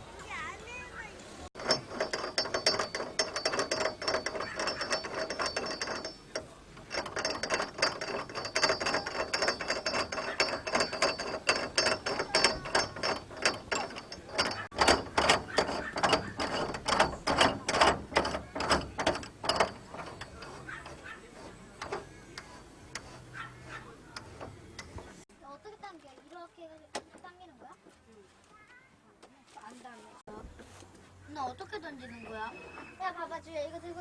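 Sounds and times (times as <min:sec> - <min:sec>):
rapid mechanical ratcheting: 0:01.6 - 0:25.3.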